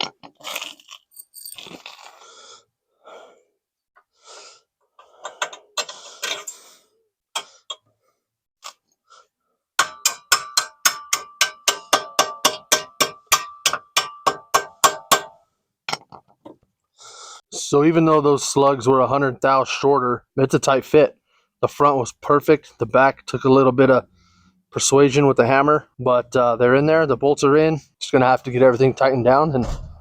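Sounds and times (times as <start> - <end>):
metal clinks and scrapes: 0.9 - 2.1, 5.0 - 6.8
hammer striking steel: 9.8 - 15.4.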